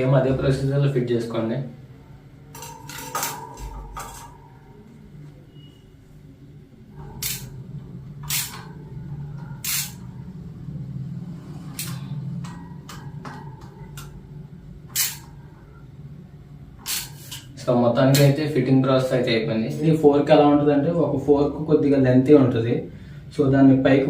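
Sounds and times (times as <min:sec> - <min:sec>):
low steady hum: 0:00.0 - 0:24.0
sharp metallic clicks and rasps: 0:09.6 - 0:10.0, 0:14.9 - 0:15.3.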